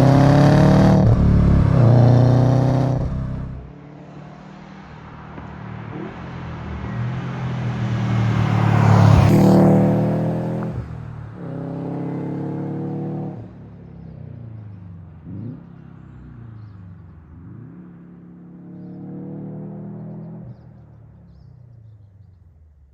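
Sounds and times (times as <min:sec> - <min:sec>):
car engine accelerating past: 0:00.0 - 0:13.4.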